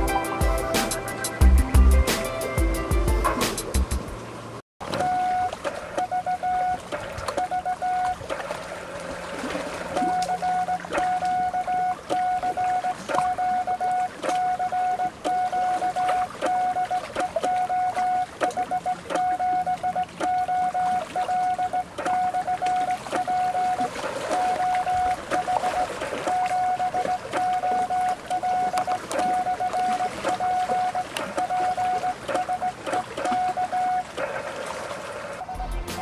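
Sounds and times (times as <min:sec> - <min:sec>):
morse code beeps: 0:05.0 - 0:06.8, 0:07.4 - 0:08.2, 0:10.0 - 0:34.2.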